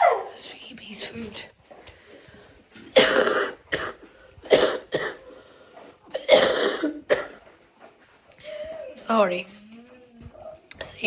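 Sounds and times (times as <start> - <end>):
person coughing hard: 3.0 - 5.3, 6.1 - 7.4.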